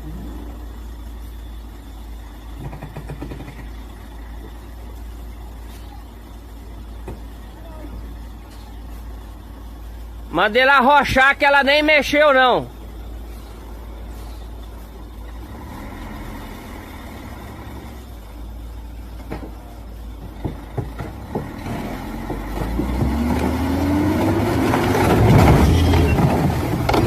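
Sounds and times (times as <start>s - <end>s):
diesel truck engine revving: 0.0s - 27.0s
knocks and creaks: 2.5s - 4.6s, 19.2s - 23.9s, 24.8s - 27.0s.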